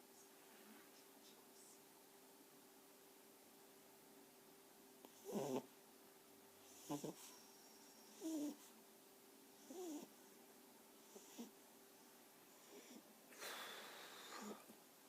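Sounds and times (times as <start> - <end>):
dog snoring: 5.1 - 5.7, 6.6 - 8.7, 9.6 - 10.1, 11.0 - 11.5, 12.5 - 13.0.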